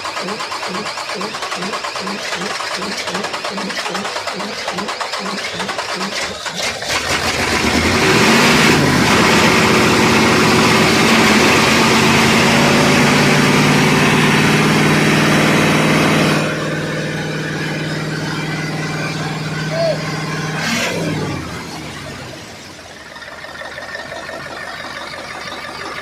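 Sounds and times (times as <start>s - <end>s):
diesel engine running: 0.0s - 26.0s
starter cranking diesel engine: 0.0s - 26.0s.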